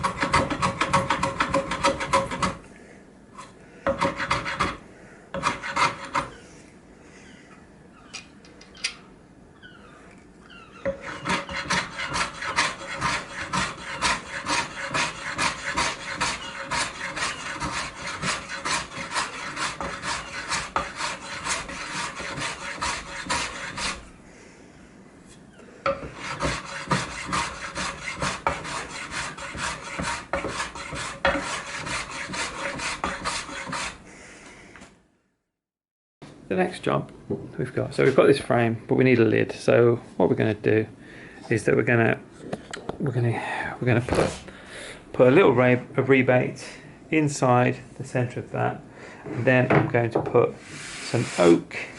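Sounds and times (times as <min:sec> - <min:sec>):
wood rasping by hand: 0:00.0 - 0:02.6, 0:03.9 - 0:04.8, 0:05.4 - 0:06.3, 0:10.8 - 0:24.1, 0:25.9 - 0:34.0.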